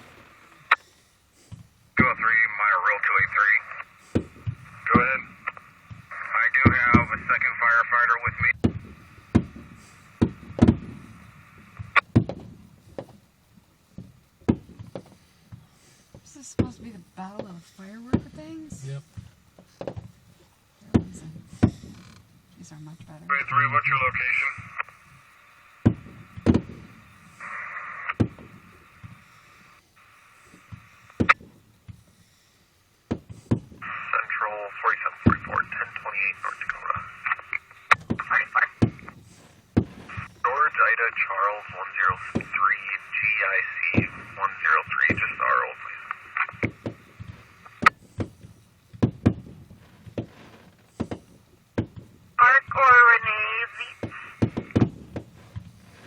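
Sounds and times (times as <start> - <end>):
police scanner hissing: 1.5 - 12.1, 33.3 - 49.7, 50.9 - 56.0
fireworks banging: 8.2 - 13.2, 25.8 - 27.5, 37.9 - 40.4, 46.4 - 56.0.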